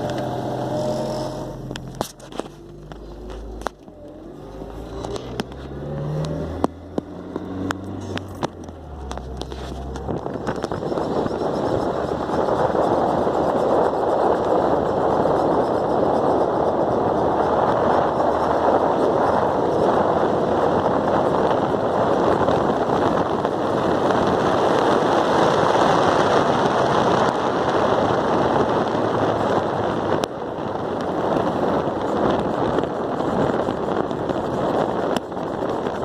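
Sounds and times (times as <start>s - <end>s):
suspension chirping: 0.0s - 25.6s
road noise: 0.0s - 36.0s.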